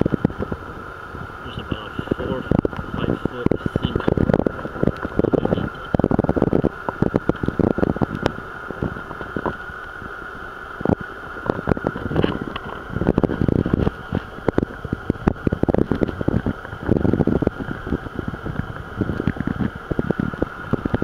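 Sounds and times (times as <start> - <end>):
rumbling gusts on microphone: 0.0 - 21.0
steady high hum: 0.0 - 21.0
crackling clicks: 6.8 - 8.4, 10.7 - 21.0.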